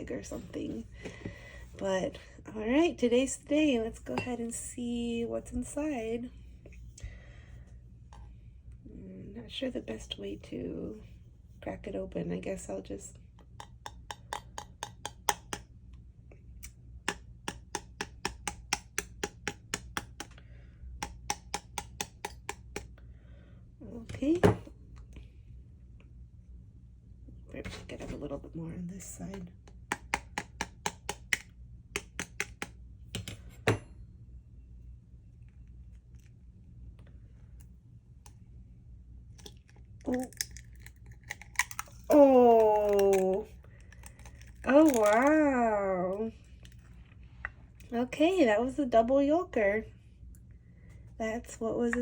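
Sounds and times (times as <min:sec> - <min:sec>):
eggshell cracking: 0:13.5 - 0:15.7, 0:39.3 - 0:45.4.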